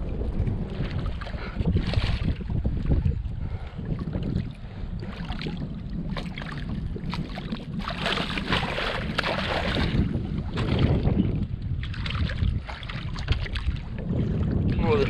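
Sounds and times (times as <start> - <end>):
wind buffeting microphone: 0.0 - 15.0
waves splashing against kayak hull: 4.3 - 14.9.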